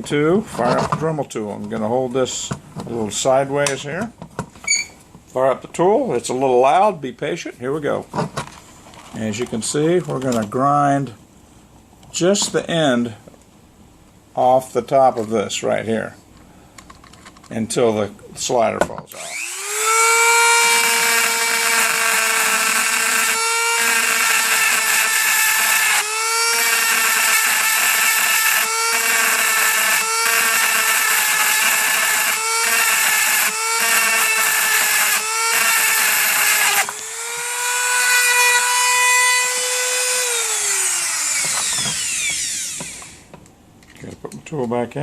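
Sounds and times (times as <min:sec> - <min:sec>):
rotary tool grinding: 0:19.1 - 0:43.3.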